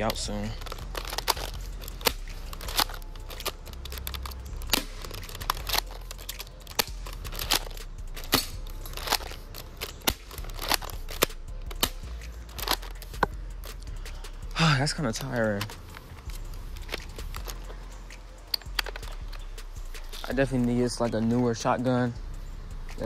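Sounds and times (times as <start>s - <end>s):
airsoft shotgun pumping and firing: 0.6s - 13.8s.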